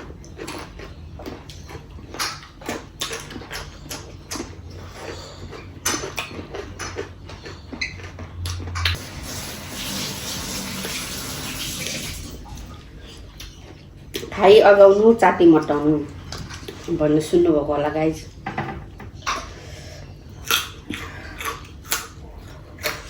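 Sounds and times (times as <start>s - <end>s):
water running: 9.0s - 12.8s.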